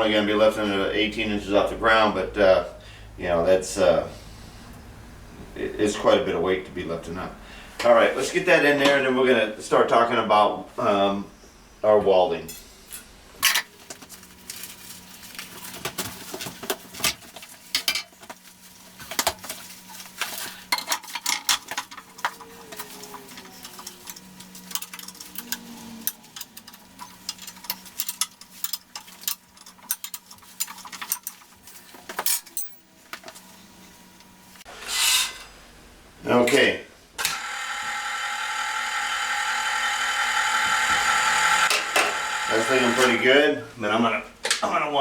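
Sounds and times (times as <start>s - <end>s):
steady low hum: 0.0s - 37.3s
steel parts clinking and clanking: 20.7s - 31.5s, 32.1s - 32.8s.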